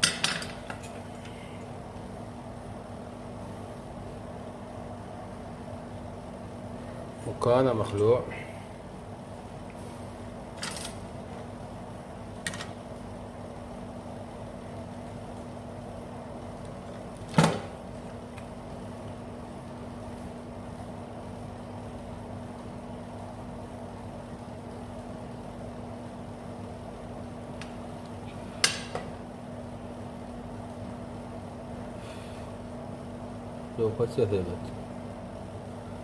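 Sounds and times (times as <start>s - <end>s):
low electrical hum: 0.0s - 36.0s.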